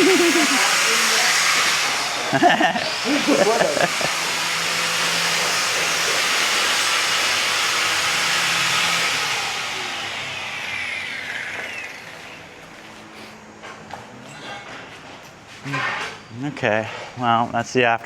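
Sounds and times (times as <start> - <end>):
power tool running with hiss: 0.0 - 13.6.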